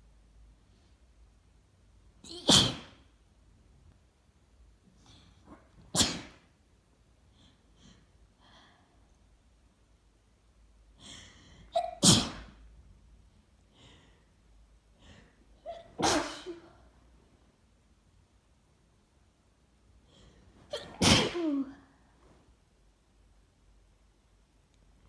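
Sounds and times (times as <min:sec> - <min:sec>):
wet sneezes: 0:02.3 - 0:03.0, 0:05.5 - 0:06.5, 0:11.7 - 0:12.6, 0:15.7 - 0:16.8, 0:20.6 - 0:21.9.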